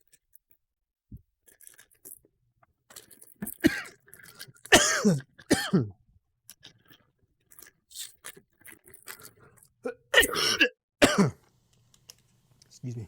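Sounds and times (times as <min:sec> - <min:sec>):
man coughing: 0:03.6 - 0:04.0, 0:04.7 - 0:06.0, 0:09.9 - 0:11.4.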